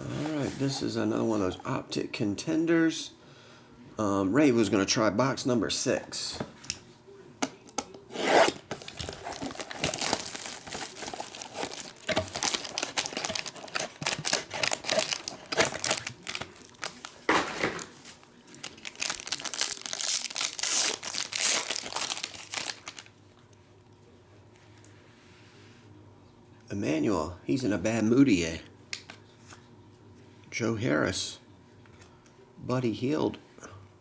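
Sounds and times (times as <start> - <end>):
card wrappers ripping and crinkling: 8.2 - 23.1.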